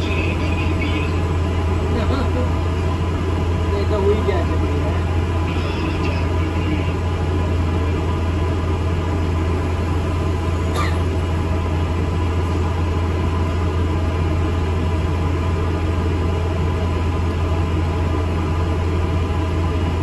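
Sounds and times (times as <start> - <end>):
bus engine and road rumble: 0.0 - 20.0.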